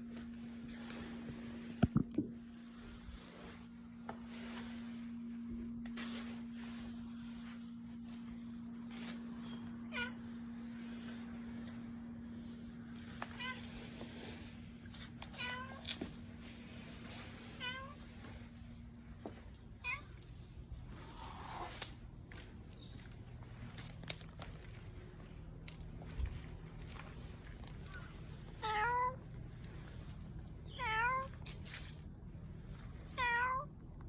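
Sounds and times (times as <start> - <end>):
cat meowing: 28.6 - 29.2.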